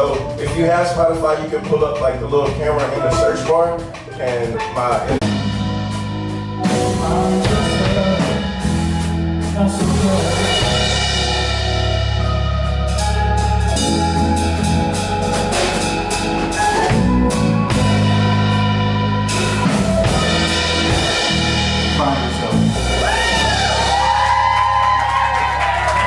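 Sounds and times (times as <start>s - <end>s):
music with bass and drums: 0.0s - 26.0s
person singing: 6.6s - 11.1s.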